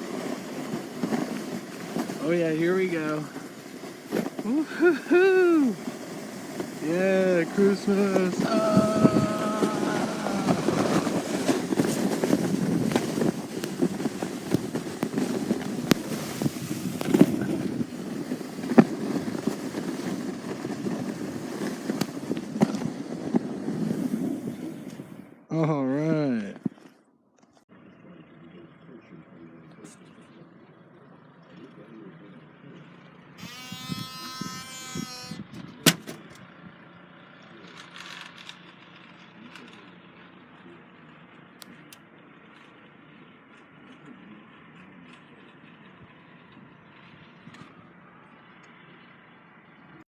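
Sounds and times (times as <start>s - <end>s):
wind rumbling against microphone: 0.0s - 25.4s
sharp knocks and crunches: 10.2s - 23.4s
buzzing tone: 33.3s - 35.5s.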